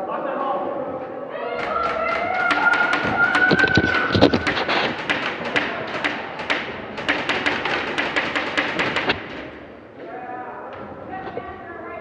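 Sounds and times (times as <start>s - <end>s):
airsoft guns firing: 1.6s - 9.6s.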